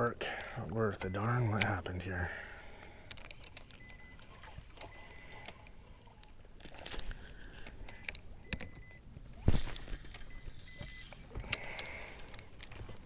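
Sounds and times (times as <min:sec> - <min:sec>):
fishing gear clicks and knocks: 0:02.8 - 0:08.9, 0:09.5 - 0:13.0
faint high beeps: 0:03.8 - 0:05.4, 0:07.9 - 0:09.0, 0:10.2 - 0:11.2.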